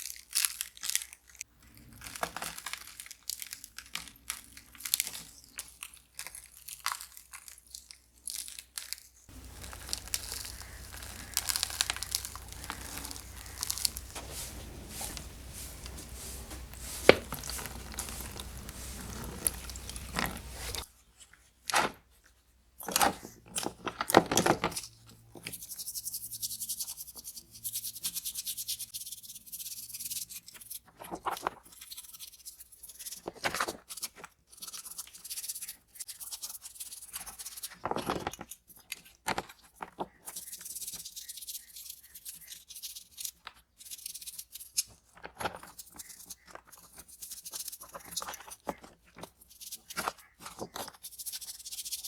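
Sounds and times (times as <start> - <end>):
steady hiss with low hum: 9.3 - 20.8
scraping rustling and clicks: 9.3 - 20.9.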